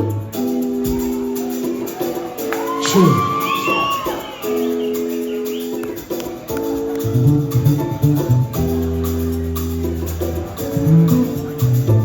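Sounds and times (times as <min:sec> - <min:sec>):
shaker-like percussion beat: 0:00.0 - 0:12.0
bass line: 0:02.7 - 0:12.0.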